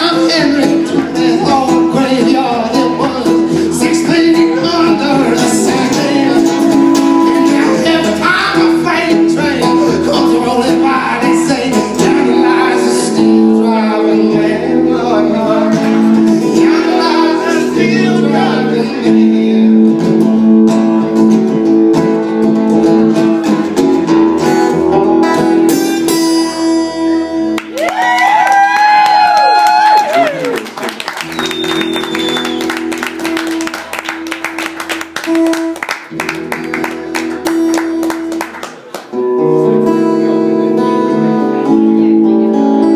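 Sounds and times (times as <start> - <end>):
person singing: 0.0 - 20.3
acoustic guitar folk-blues: 0.0 - 28.2, 30.0 - 42.9.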